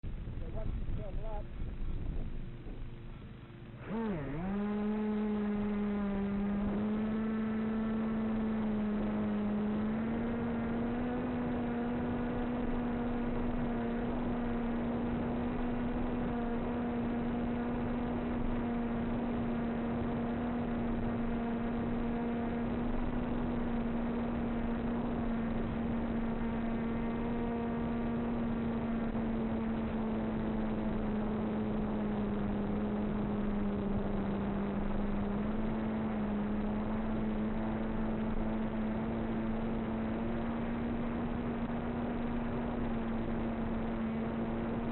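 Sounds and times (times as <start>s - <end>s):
wind noise: 0.1s - 3.2s
small motor running: 1.3s - 44.9s.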